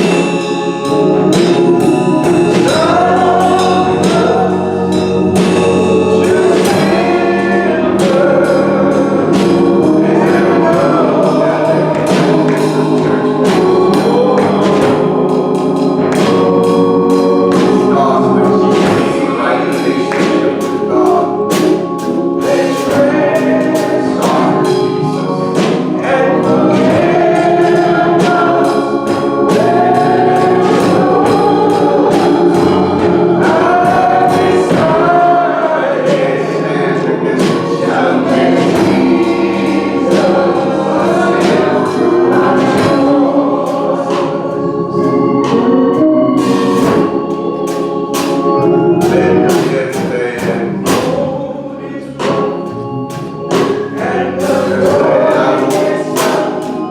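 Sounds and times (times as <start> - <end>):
percussive beat: 0.0 - 36.4, 52.2 - 56.9
choir singing gospel: 0.0 - 56.9
organ chords: 0.0 - 56.9.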